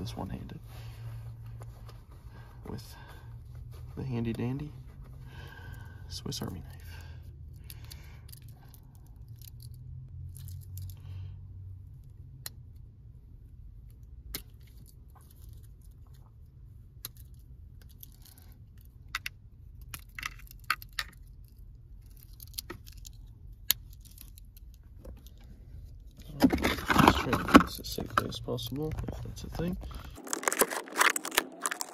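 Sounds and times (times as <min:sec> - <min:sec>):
low steady hum: 0:00.0 - 0:31.9
plastic crinkling: 0:29.0 - 0:31.9
plastic packaging clicks and snaps: 0:30.0 - 0:31.9.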